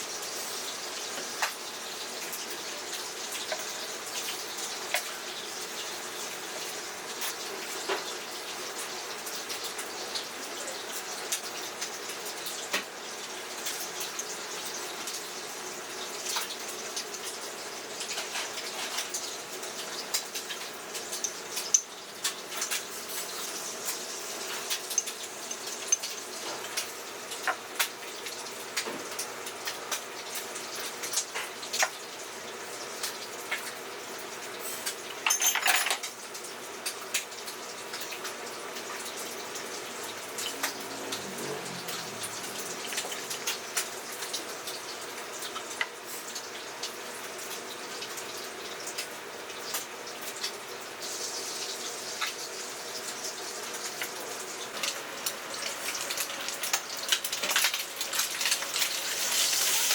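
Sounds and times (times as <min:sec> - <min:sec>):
dishes and utensils clinking: 0:24.4 - 0:27.6, 0:34.8 - 0:36.2
running water: 0:38.3 - 0:48.9.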